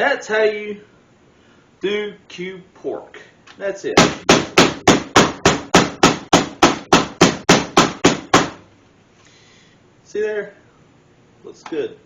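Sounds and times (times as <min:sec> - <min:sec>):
meat mallet pounding meat: 0:04.0 - 0:08.6.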